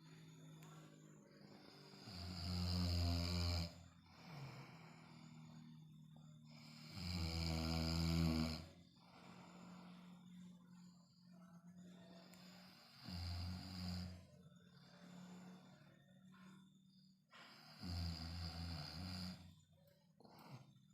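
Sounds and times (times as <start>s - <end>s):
quiet breathing: 0.0s - 20.9s
loud snores: 1.5s - 5.7s, 6.5s - 9.8s, 12.3s - 14.4s, 17.3s - 19.7s.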